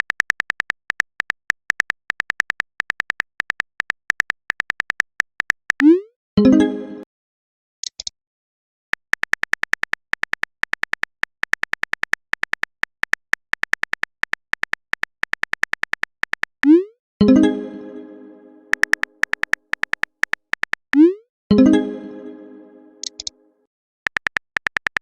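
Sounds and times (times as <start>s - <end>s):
message chime: 6.4s - 7.0s, 17.2s - 19.0s, 21.5s - 23.3s
keyboard tap clicks: 18.7s - 20.8s.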